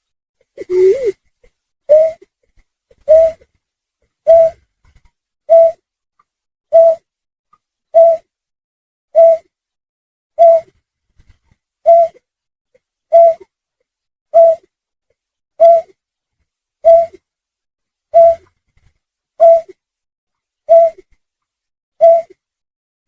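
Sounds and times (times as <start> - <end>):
snipe call: 0.6 - 1.2, 1.9 - 2.2, 3.1 - 3.4, 5.5 - 5.8, 9.2 - 9.5, 13.1 - 13.4, 14.4 - 14.7, 15.6 - 15.9, 16.8 - 17.1, 18.2 - 18.4, 20.7 - 21.0, 22.0 - 22.3.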